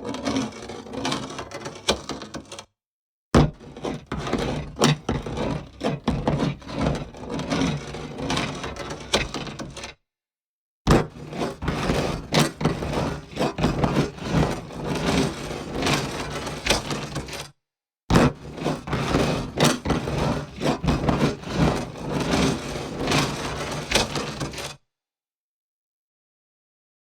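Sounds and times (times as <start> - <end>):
scraping and knocks: 11.4 - 17.5, 18.2 - 24.8.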